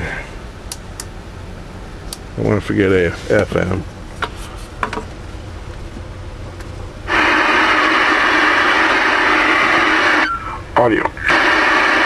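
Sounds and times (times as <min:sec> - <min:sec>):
radio static hiss: 0:07.1 - 0:12.0.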